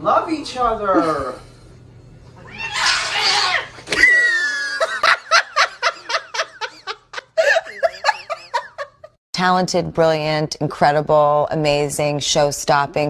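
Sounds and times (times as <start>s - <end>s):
person laughing: 4.3s - 9.2s.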